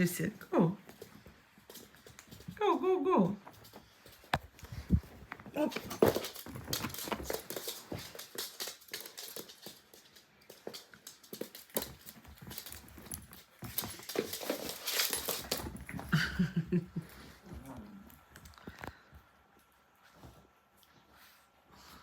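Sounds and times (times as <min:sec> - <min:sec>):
dog claws scrabbling on floor: 0:03.5 - 0:16.1.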